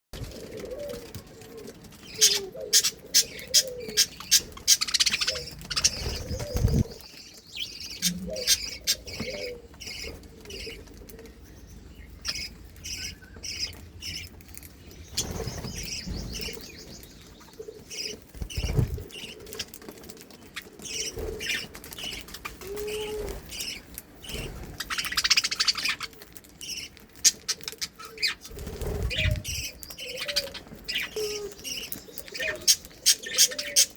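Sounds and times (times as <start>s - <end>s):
fluttering wings: 0.2s - 7.4s, 13.4s - 26.5s, 28.2s - 30.8s
birds pecking and crunching cabbage: 0.2s - 33.9s
budgerigars chirping and chattering: 2.0s - 19.8s, 20.5s - 33.9s.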